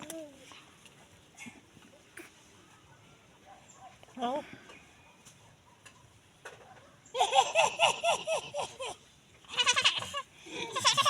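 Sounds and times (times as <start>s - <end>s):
goat bleating: 9.5s - 11.0s.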